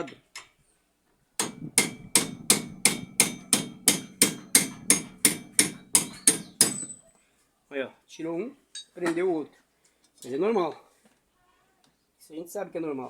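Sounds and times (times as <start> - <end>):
hammer striking steel: 1.4 - 7.0.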